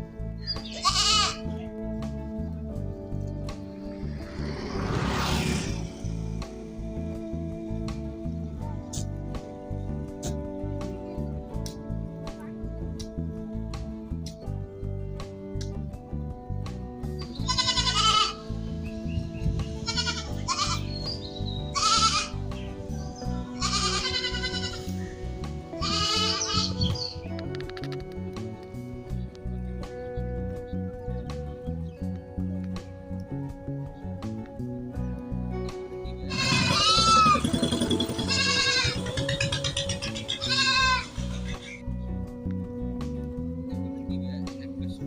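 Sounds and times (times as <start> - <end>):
background music: 0.0 - 45.0
goats bleating: 0.6 - 1.5, 17.4 - 18.5, 19.8 - 20.9, 21.7 - 22.4, 23.5 - 24.9, 25.8 - 26.8, 36.3 - 41.6.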